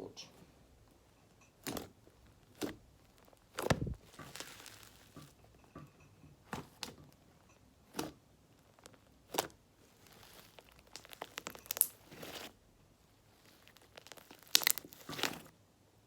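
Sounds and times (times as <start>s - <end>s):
slime with beads squeezed: 3.4s - 5.2s, 9.2s - 12.5s, 13.3s - 15.5s
slime popping: 8.8s - 12.5s, 13.5s - 15.5s.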